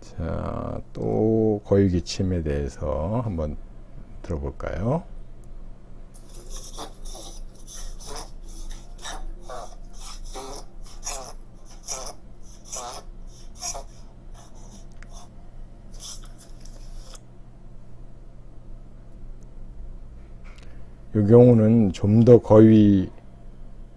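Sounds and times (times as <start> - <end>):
dog coughing with honking hacks: 6.6 - 14.6.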